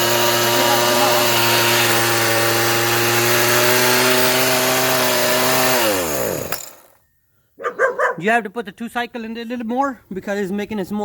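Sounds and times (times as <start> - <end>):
chainsaw engine running: 0.0 - 7.0.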